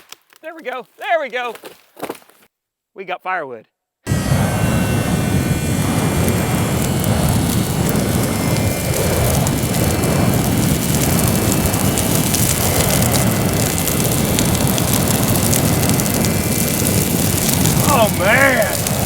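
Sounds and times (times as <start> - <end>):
fire burning and crackling: 4.1 - 19.0.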